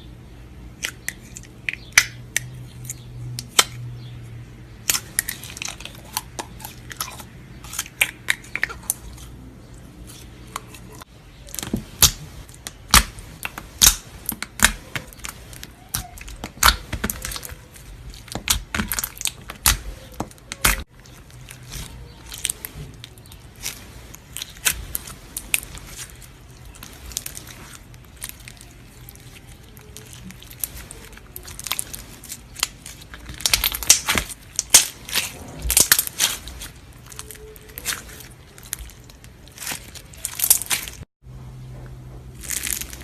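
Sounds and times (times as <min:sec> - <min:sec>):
slime crackling and popping: 0:10.0 - 0:41.1, 0:42.3 - 0:43.0.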